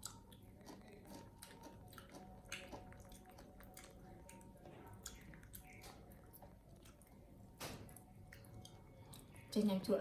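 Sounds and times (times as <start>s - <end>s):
monkey chewing and smacking: 0.0s - 7.2s.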